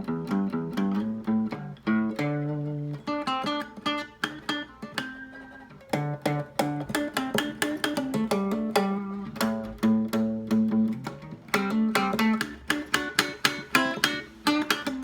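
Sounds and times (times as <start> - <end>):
blues guitar playing: 0.0 - 15.0.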